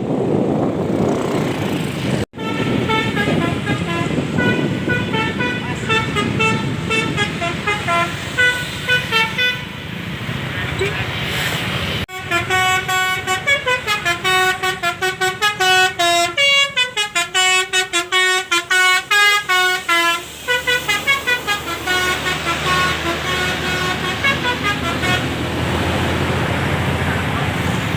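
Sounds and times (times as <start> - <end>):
low vehicle rumble: 0.0 - 16.9, 17.8 - 27.9
musical air horn melody: 2.4 - 9.8, 12.1 - 25.5.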